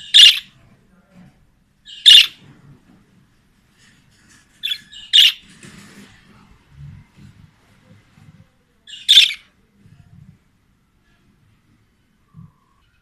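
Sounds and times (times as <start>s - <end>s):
budgerigar sharp calls: 0.0s - 0.5s, 1.9s - 2.4s, 4.6s - 5.4s, 8.9s - 9.4s
budgerigars twittering: 0.0s - 0.5s, 1.9s - 2.4s, 4.6s - 5.4s, 8.9s - 9.5s.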